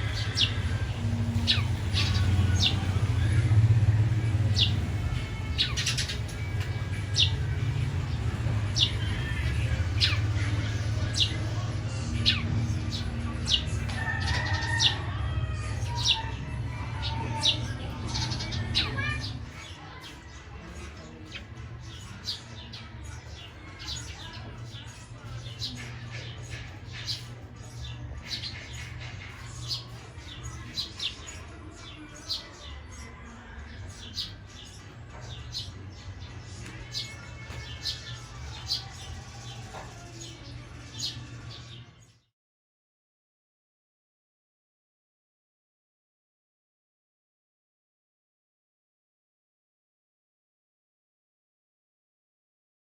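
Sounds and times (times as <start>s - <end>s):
birds chirping: 0.0s - 42.3s.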